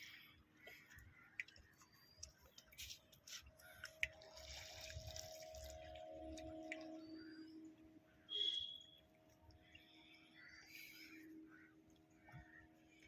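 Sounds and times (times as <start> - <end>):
water drips and splashes: 0.0 - 13.0.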